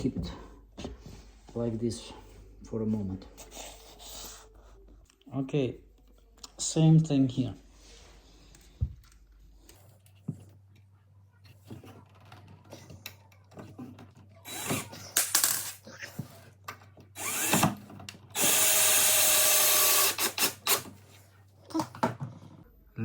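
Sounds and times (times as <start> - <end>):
drill-driver driving a screw: 14.5 - 15.7, 17.2 - 17.8, 18.4 - 20.9.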